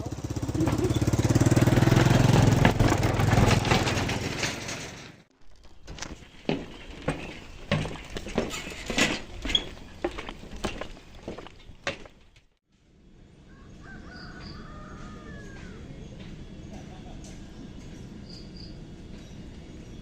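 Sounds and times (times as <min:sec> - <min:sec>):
wavering animal call: 0:00.0 - 0:01.6
outdoor background: 0:00.0 - 0:20.0.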